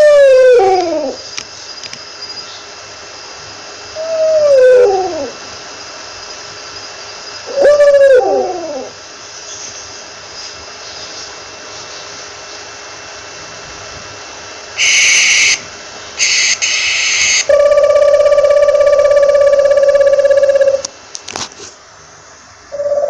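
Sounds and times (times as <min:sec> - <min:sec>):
owl call sliding downward: 0:04.0 - 0:05.4, 0:07.5 - 0:09.0, 0:16.2 - 0:20.9
owl hissing screeches: 0:14.8 - 0:15.6, 0:16.2 - 0:17.9.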